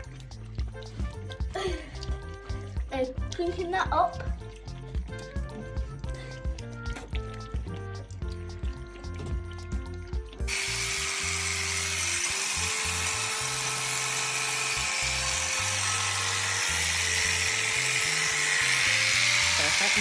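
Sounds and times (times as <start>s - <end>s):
background music: 0.0s - 20.0s
electric shears buzzing: 10.4s - 20.0s.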